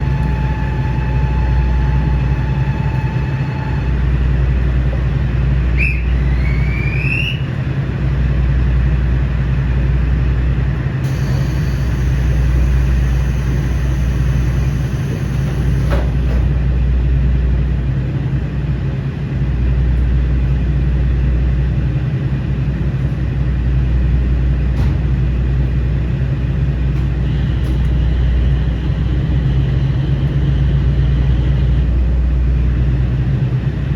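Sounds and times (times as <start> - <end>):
diesel engine droning: 0.0 - 33.9
short rising squeal: 5.8 - 7.5.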